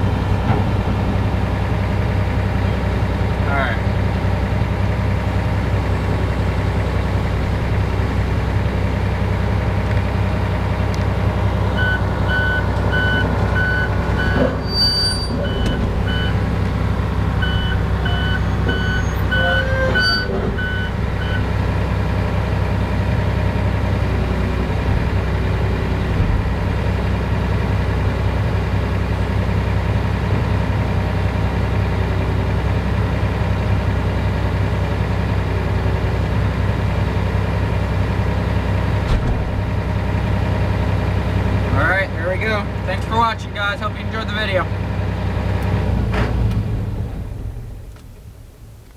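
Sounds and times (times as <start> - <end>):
excavator diesel engine running: 0.0 - 48.9
backup alarm beeping: 11.8 - 14.4, 15.4 - 16.4, 17.4 - 21.5.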